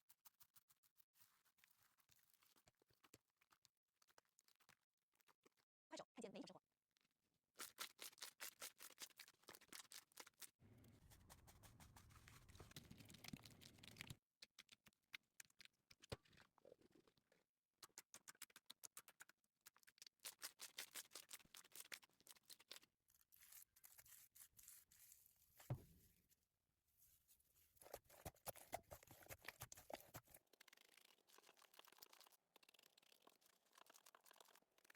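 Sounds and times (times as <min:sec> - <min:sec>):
slime squelching: 0:07.6 - 0:25.0, 0:27.8 - 0:34.9.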